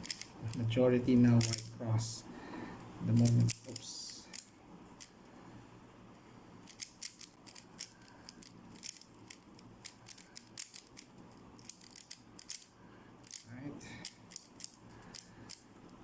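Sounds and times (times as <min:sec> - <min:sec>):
puzzle cube clicking: 0:00.0 - 0:00.6, 0:01.3 - 0:01.7, 0:03.1 - 0:05.2, 0:06.7 - 0:13.4, 0:14.0 - 0:16.0.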